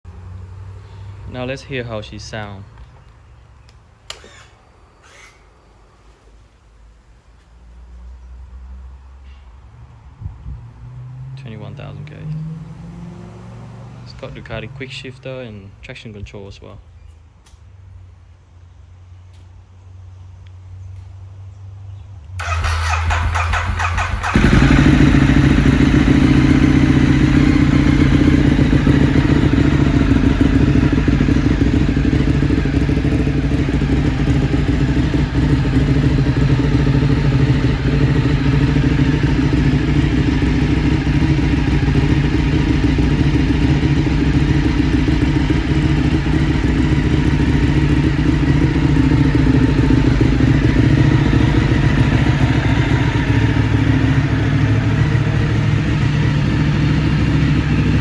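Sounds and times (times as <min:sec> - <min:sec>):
motorcycle engine idling: 0:22.4 - 0:58.0.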